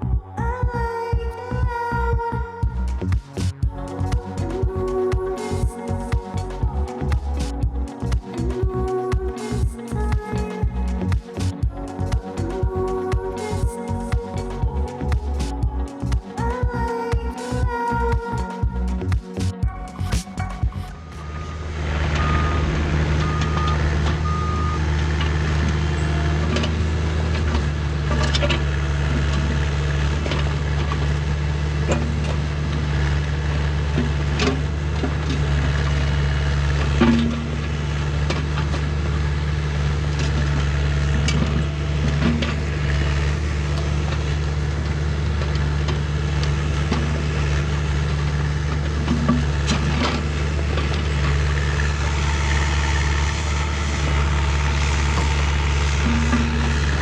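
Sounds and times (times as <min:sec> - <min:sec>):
heavy machine engine running: 0:00.0 - 0:57.0
reversing beeps: 0:21.0 - 0:24.9.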